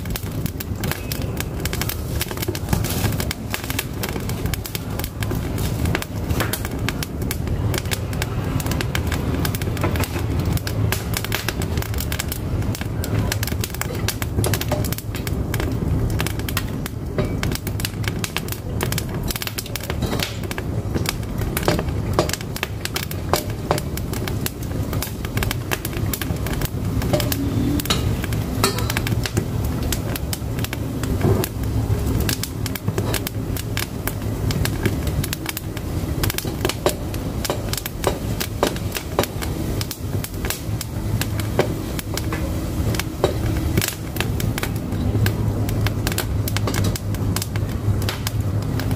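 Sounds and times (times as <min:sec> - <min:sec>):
firewood crackling and popping: 0:00.0 - 0:48.9
low rumble of fire: 0:00.0 - 0:48.9.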